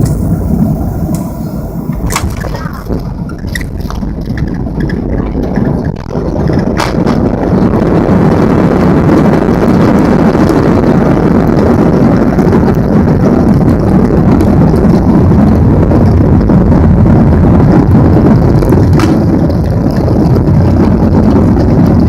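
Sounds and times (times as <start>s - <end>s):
wheels touching down knock: 0.0s - 2.8s
rushing air: 0.0s - 4.3s
jet engines reverse thrust roar: 0.0s - 5.5s, 6.5s - 22.0s.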